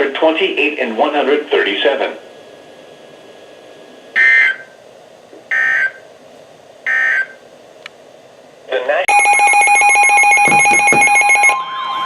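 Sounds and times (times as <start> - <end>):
two-tone digital data bursts: 9.1 - 11.6.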